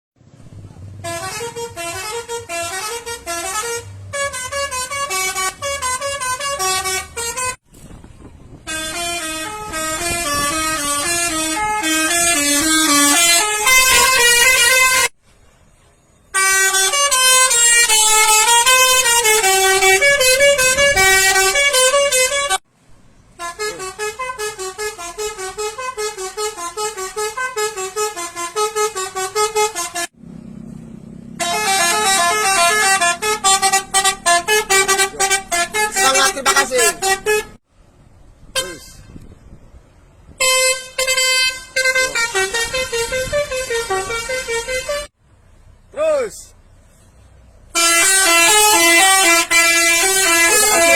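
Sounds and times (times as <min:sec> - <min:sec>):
multi-tone bus horn melody: 0:00.9 - 0:07.6, 0:08.6 - 0:15.2, 0:16.3 - 0:22.7, 0:23.3 - 0:30.2, 0:31.3 - 0:37.6, 0:38.5 - 0:39.1, 0:40.3 - 0:45.2, 0:47.7 - 0:50.9.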